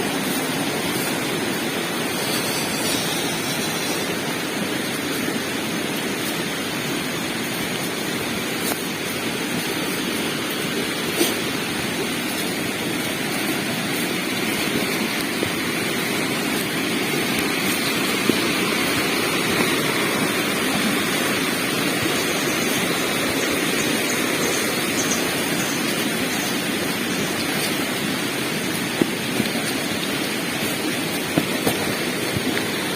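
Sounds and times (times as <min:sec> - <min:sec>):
waterfall rushing: 0:00.0 - 0:32.9.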